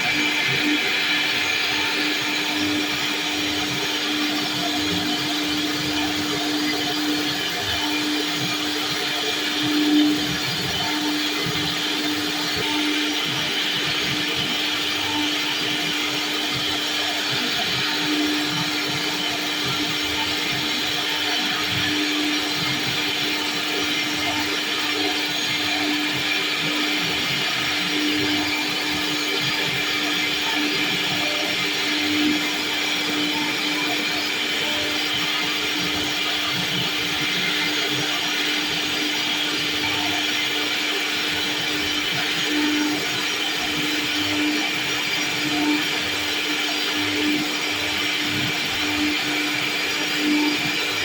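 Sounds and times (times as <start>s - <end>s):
router carving wood: 0.0s - 51.0s
router spindle whine: 0.0s - 51.0s.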